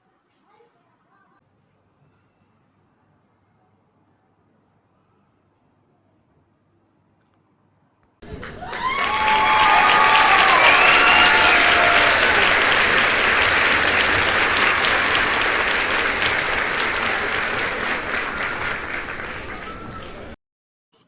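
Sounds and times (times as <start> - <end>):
crowd applauding: 8.2 - 20.4
crowd cheering: 8.2 - 20.4.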